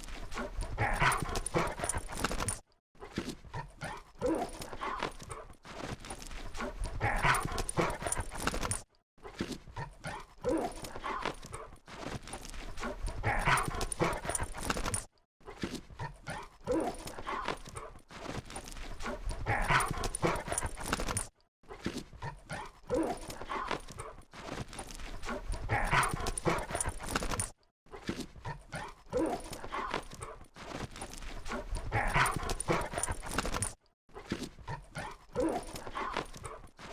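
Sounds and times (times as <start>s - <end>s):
dogs vocalizing while playing: 0.4s - 2.6s, 31.8s - 33.7s.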